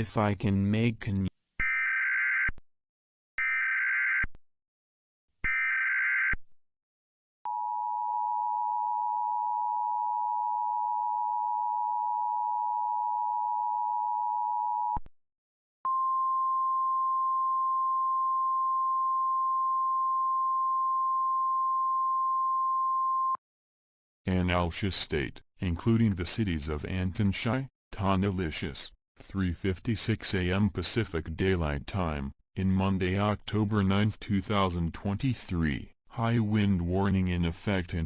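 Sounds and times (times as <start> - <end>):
single steady tone: 7.5 - 15.1, 15.9 - 23.4.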